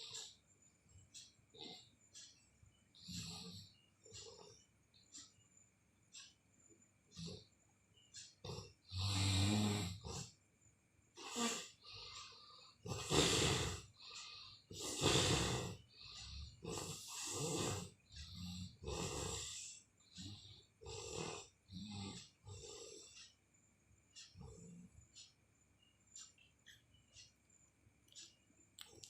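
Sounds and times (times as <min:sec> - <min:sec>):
heavy snoring: 0:03.0 - 0:04.4, 0:08.4 - 0:10.3, 0:12.8 - 0:13.9, 0:14.7 - 0:23.1.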